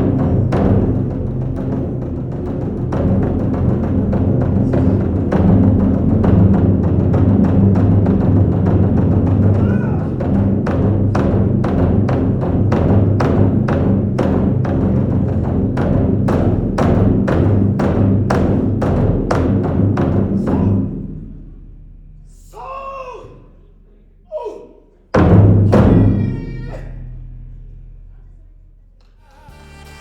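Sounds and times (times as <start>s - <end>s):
drums beaten in driving rhythm: 0.0s - 28.4s.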